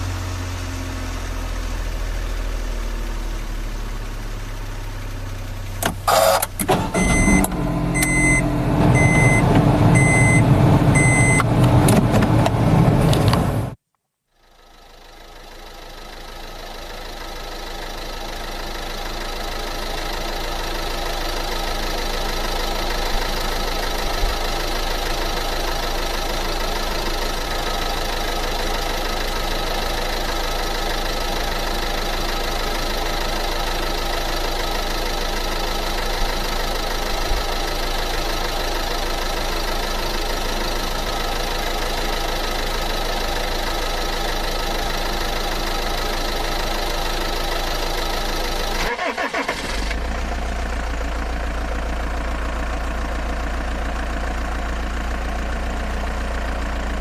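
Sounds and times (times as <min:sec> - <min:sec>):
steady engine-like running: 0:14.6 - 0:57.0.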